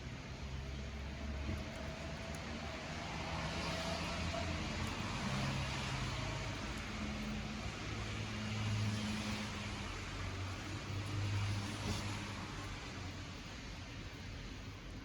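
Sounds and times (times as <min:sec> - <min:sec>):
campfire hissing and crackling: 0:00.0 - 0:15.0.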